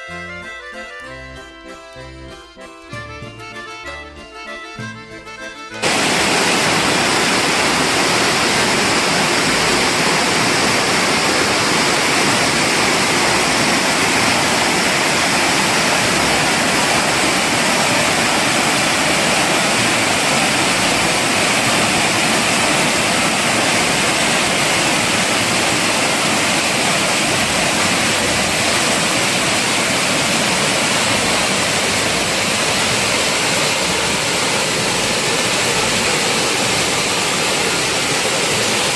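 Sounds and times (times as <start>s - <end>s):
accordion music: 0.0s - 38.2s
large waterfall rushing: 5.8s - 38.9s.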